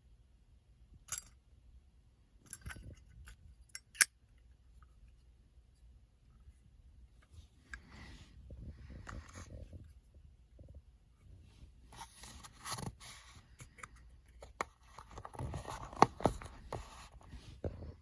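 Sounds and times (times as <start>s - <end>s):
packaging rustling and scraping: 11.9s - 18.0s.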